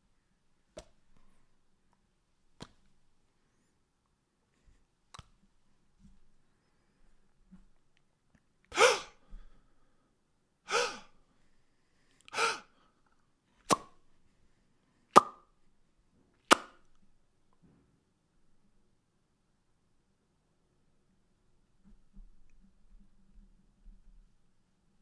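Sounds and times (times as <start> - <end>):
breathy voiced bursts: 8.7 - 9.4, 10.7 - 11.2, 12.2 - 12.8
sharp mouth pops: 13.7 - 14.0, 15.2 - 15.4, 16.5 - 16.8.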